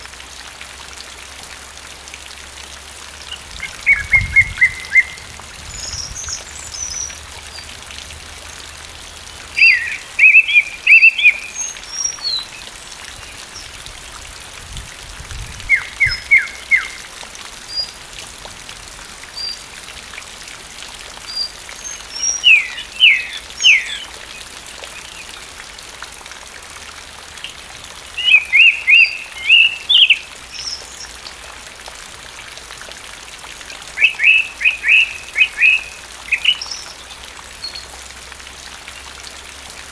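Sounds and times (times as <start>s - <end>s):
song thrush singing: 3.2s - 13.8s, 14.8s - 18.1s, 21.2s - 25.4s, 27.4s - 31.3s, 33.9s - 38.0s.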